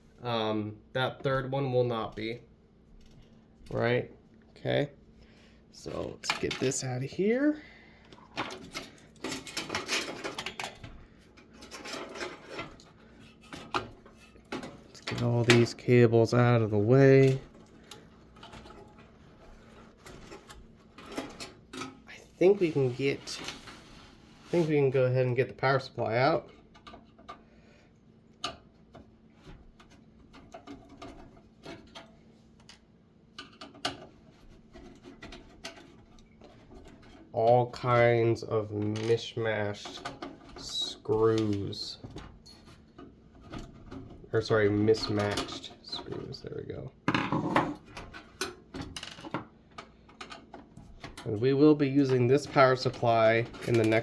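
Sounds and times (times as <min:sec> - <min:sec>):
computer parts clattering: 0:08.2 - 0:19.2, 0:33.4 - 0:54.0.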